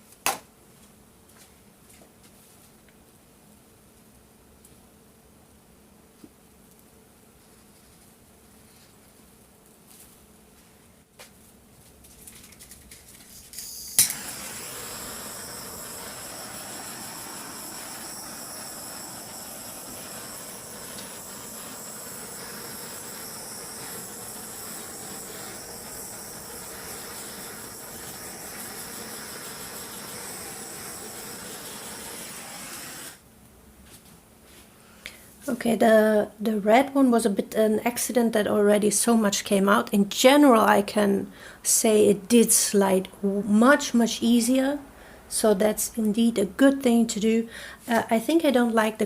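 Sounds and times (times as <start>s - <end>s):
heat gun hissing and whining: 13.3s - 33.2s.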